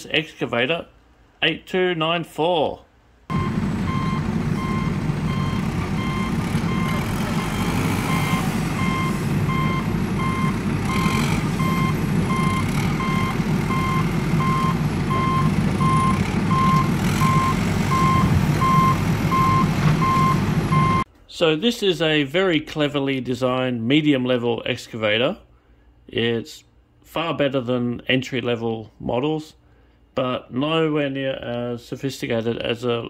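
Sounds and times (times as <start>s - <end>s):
low engine rumble: 3.3s - 21.1s
vehicle reversing alarm beeping: 3.3s - 21.1s.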